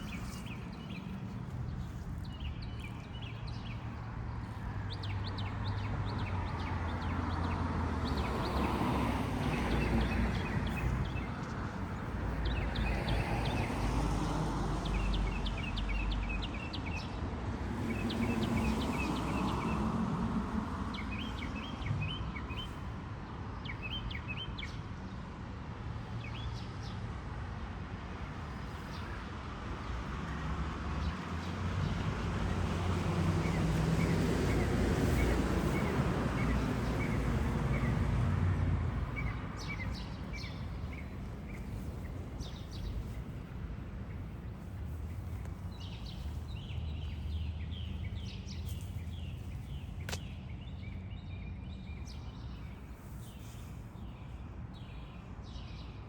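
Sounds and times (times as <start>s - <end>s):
small birds chirping: 0.0s - 13.8s, 32.8s - 55.9s.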